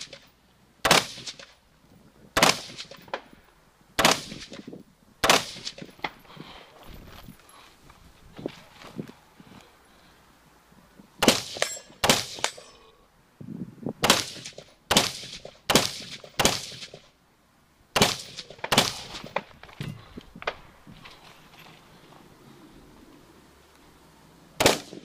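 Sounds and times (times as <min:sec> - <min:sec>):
rifle shots: 0:00.8 - 0:01.6, 0:02.4 - 0:03.1, 0:04.0 - 0:05.9, 0:11.2 - 0:12.6, 0:14.0 - 0:17.0, 0:18.0 - 0:19.5, 0:24.6 - 0:25.0.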